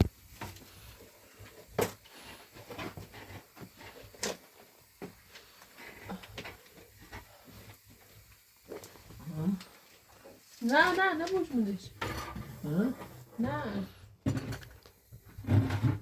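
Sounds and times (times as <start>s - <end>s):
knocks and clicks of objects handled: 14.2s - 16.0s.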